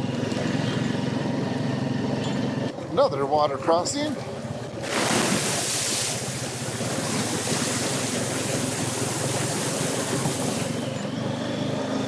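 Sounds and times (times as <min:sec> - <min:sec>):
atv engine running: 0:00.0 - 0:12.0
water splashing off tyres: 0:04.1 - 0:11.0.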